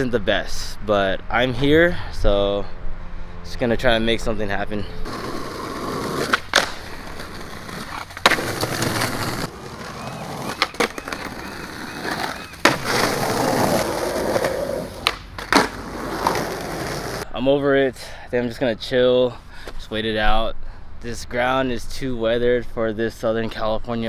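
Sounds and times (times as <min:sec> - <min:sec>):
skateboard wheels rolling on pavement: 0:05.0 - 0:17.3
skateboard clacking on ground: 0:05.1 - 0:17.2.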